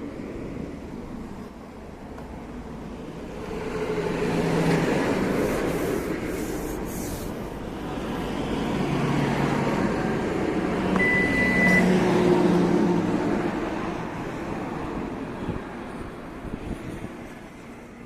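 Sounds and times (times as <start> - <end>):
short high beep: 11.0 - 11.9.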